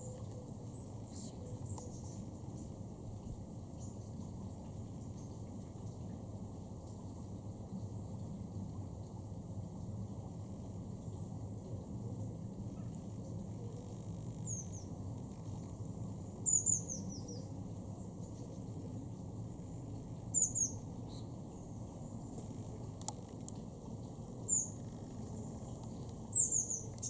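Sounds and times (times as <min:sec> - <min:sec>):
small bird chirping: 0:00.0 - 0:02.7, 0:13.8 - 0:14.9, 0:16.4 - 0:17.5, 0:20.3 - 0:21.6, 0:24.4 - 0:27.0
steady low rumble: 0:00.0 - 0:27.0.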